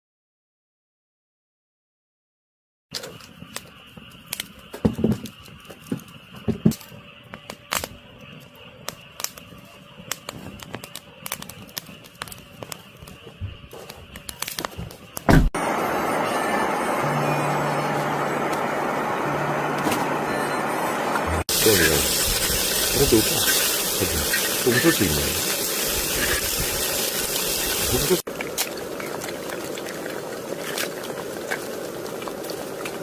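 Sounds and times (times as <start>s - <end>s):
low engine hum: 15.6s - 21.5s
vehicle road noise: 15.6s - 22.2s.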